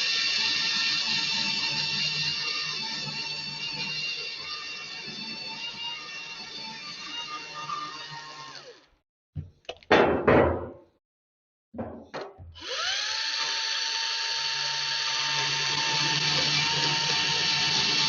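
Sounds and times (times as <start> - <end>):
band saw motor running: 0.0 - 8.8, 12.6 - 18.0
metal knocks and clanks: 9.8 - 10.9, 11.8 - 12.6.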